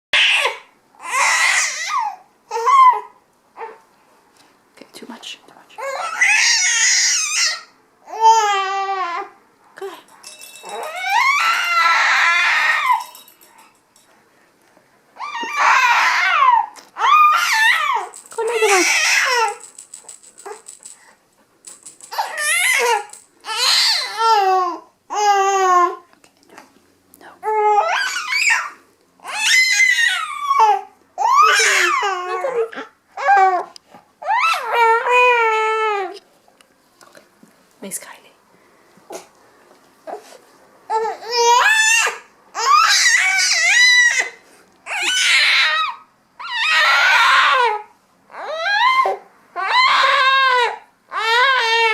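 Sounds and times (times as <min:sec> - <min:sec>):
baby whining cries: 0:00.2 - 0:03.8, 0:05.8 - 0:09.4, 0:10.6 - 0:13.2, 0:15.2 - 0:19.7, 0:22.1 - 0:26.1, 0:27.4 - 0:36.2, 0:40.9 - 0:51.9.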